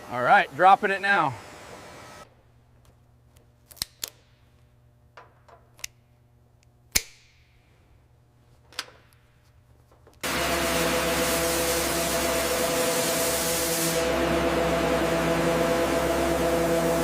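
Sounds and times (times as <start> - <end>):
loud steady hiss: 10.3 - 17.0.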